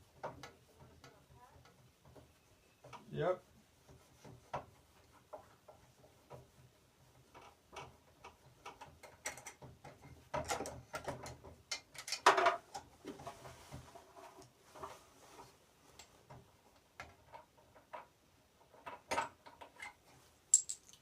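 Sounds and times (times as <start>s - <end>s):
metal tools clicking and clanking: 19.8s - 21.0s.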